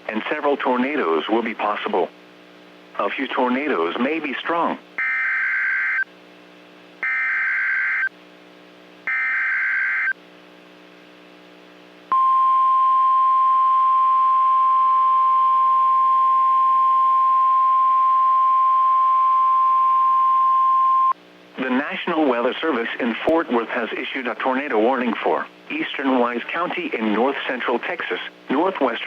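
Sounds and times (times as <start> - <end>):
harsh buzzing data bursts: 5.0 - 6.1, 7.0 - 8.1, 9.0 - 10.2
steady alarm tone: 5.0 - 6.1, 7.0 - 8.1, 9.1 - 10.2.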